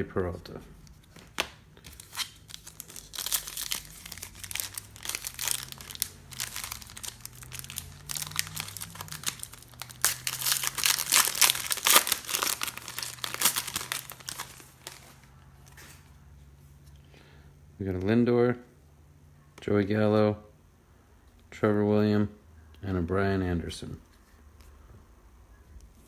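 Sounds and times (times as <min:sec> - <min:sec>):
plastic wrapper crinkling and tearing: 0:01.0 - 0:15.3.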